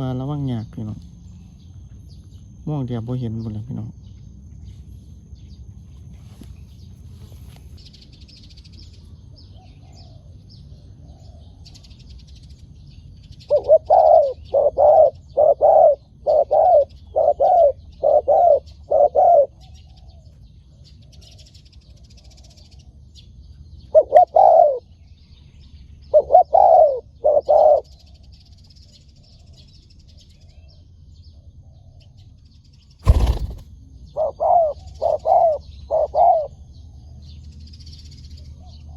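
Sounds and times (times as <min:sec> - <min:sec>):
dove cooing: 0:13.5 - 0:19.6, 0:24.0 - 0:24.8, 0:26.2 - 0:27.8
small birds chirping: 0:27.5 - 0:38.9.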